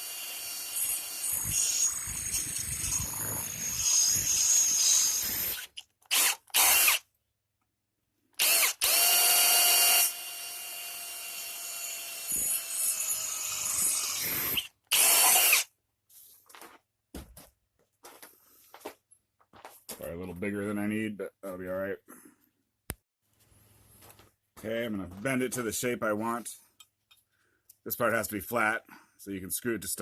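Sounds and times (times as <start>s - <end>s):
power drill boring through steel: 0.0s - 7.0s, 8.4s - 15.7s.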